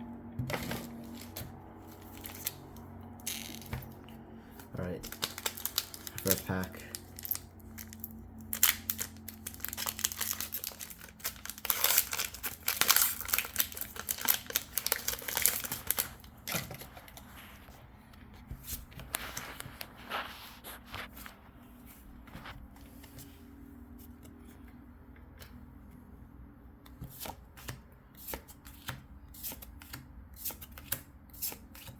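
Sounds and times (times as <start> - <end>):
foil wrapper crinkling and tearing: 0.6 - 2.6, 4.8 - 17.3.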